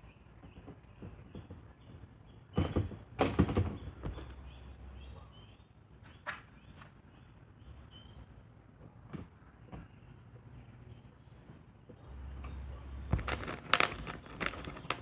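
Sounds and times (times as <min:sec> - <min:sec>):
faint bird chirps: 0:00.0 - 0:13.2
knocks and thumps on box fan: 0:00.3 - 0:04.4, 0:13.1 - 0:15.0.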